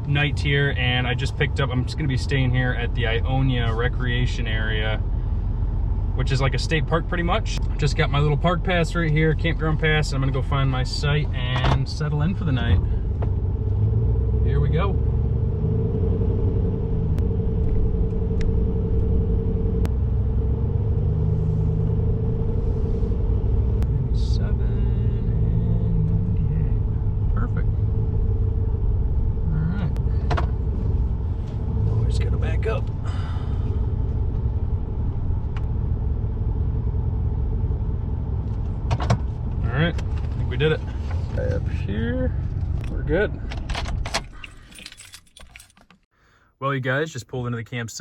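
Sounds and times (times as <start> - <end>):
constant hum: 0.0 - 46.0
truck engine and road rumble: 0.0 - 48.0.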